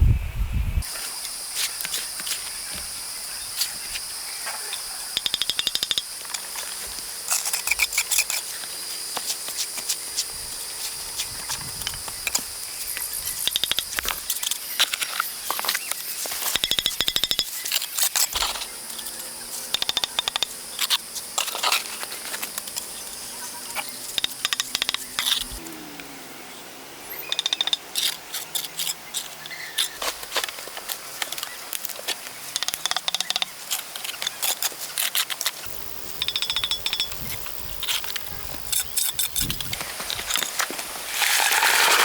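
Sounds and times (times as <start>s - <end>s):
high-pitched insect drone: 18.3s - 25.8s, 35.7s - 39.8s.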